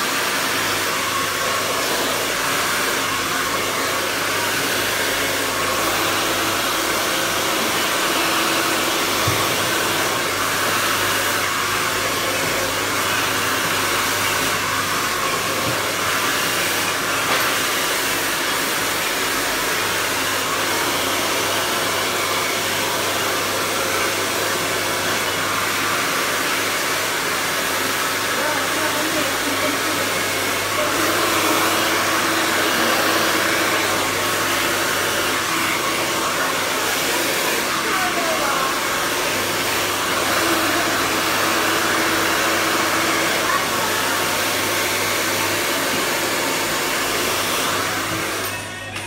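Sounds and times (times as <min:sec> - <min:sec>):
hair dryer blowing: 0:00.0 - 0:48.9.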